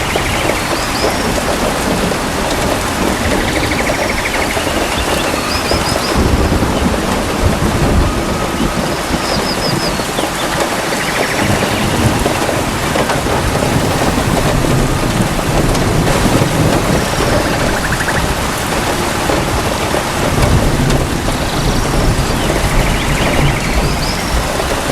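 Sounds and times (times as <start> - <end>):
heavy rain in forest: 0.0 - 24.9
low thunder rumbling: 0.0 - 24.9.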